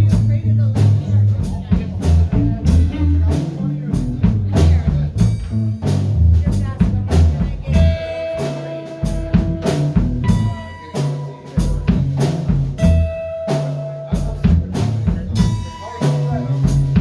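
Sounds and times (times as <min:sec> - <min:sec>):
bass line: 0:00.0 - 0:17.0
drum kit beat: 0:00.0 - 0:17.0
held lead notes: 0:00.0 - 0:17.0.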